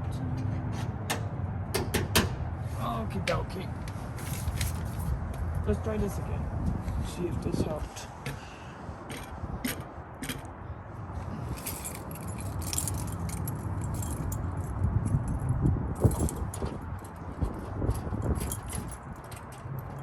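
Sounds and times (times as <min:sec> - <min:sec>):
keys jangling: 0:11.5 - 0:20.0.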